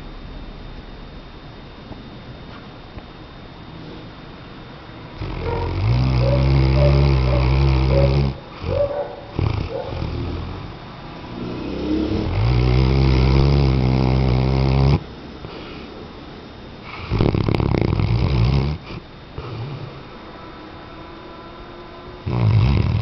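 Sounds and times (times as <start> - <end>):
dog snoring: 5.1 - 15.8, 16.8 - 20.1, 22.2 - 23.0
short breaths: 15.4 - 16.1.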